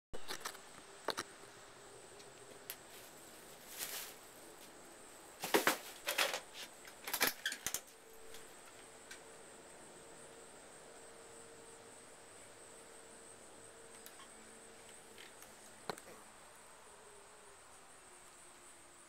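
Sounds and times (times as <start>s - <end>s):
faint background hiss: 0.2s - 19.0s
short rustling: 2.8s - 4.8s.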